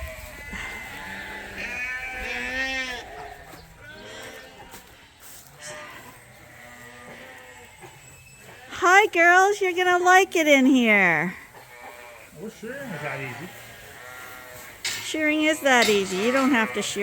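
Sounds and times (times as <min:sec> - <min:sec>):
sheep bleating: 0:00.2 - 0:08.9, 0:11.6 - 0:14.8, 0:15.6 - 0:17.0.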